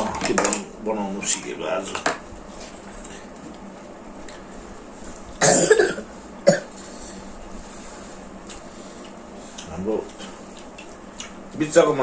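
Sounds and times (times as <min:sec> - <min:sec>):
person coughing: 0:05.4 - 0:06.7.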